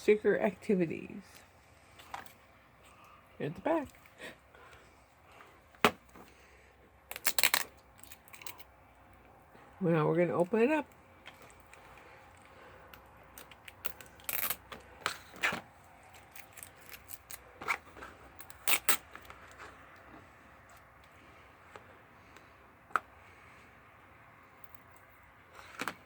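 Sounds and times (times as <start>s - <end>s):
packaging crinkling: 7.1s - 8.6s.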